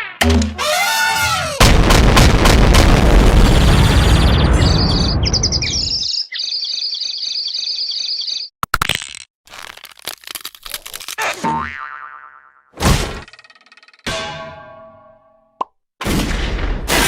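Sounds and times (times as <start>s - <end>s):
cartoon explosion rumble: 1.6s - 5.9s
high bird-like tweeting: 4.2s - 8.5s.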